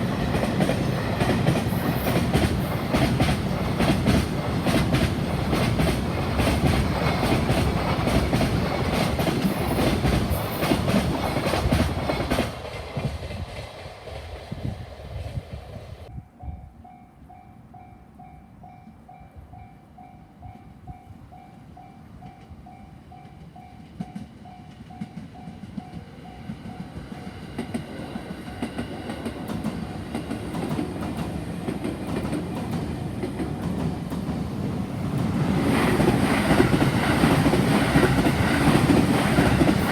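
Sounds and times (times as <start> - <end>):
train wheels clattering: 0.0 - 14.5, 23.2 - 39.9
train rumble: 0.0 - 17.4, 18.1 - 39.9.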